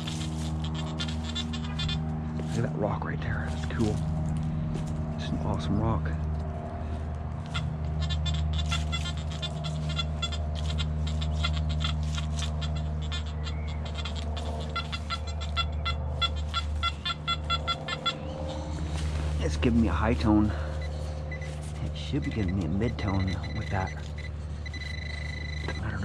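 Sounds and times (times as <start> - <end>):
steady low hum: 0.0 - 26.0
metal detector beeps: 20.1 - 26.0.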